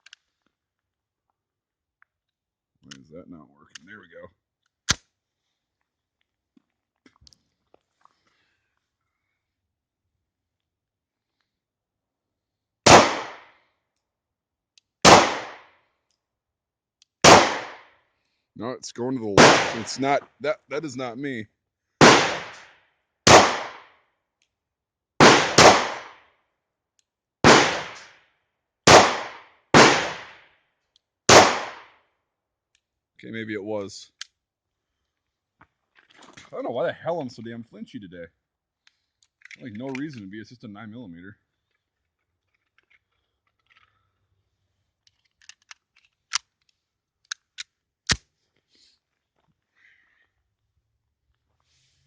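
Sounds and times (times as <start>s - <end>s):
pistol shots with echo: 12.9s - 13.5s, 15.0s - 15.7s, 17.2s - 17.8s, 19.4s - 20.1s, 22.0s - 22.6s, 23.3s - 23.9s, 25.2s - 26.2s, 27.4s - 28.0s, 28.9s - 30.4s, 31.3s - 31.9s
sharp gunshot cracks: 12.9s - 13.5s, 15.0s - 15.7s, 17.2s - 17.9s, 19.4s - 20.1s, 22.0s - 22.7s, 23.3s - 23.9s, 25.2s - 26.2s, 27.4s - 28.1s, 28.9s - 30.4s, 31.3s - 31.9s.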